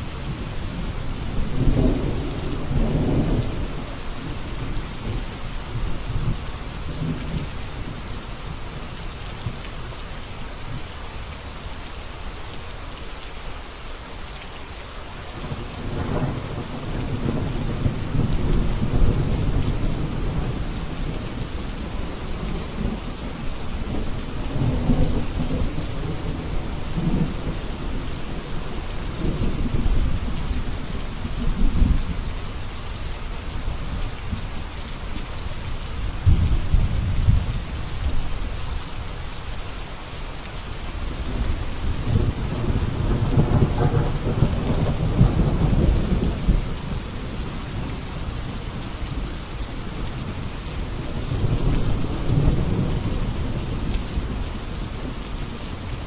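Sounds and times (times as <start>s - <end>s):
steady rain hissing: 0.0s - 56.0s
thunder rumbling: 36.0s - 38.3s, 41.1s - 48.6s.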